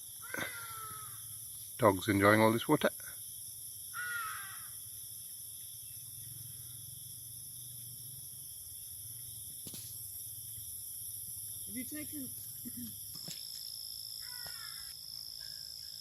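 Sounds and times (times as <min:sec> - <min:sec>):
high-pitched insect chorus: 0:00.0 - 0:16.0
crow-like falling call: 0:04.0 - 0:04.7, 0:14.2 - 0:14.9.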